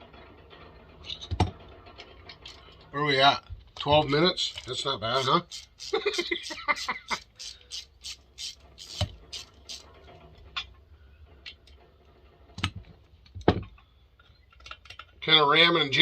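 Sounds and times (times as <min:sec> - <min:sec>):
ratchet wrench clicking: 0:04.1 - 0:09.9.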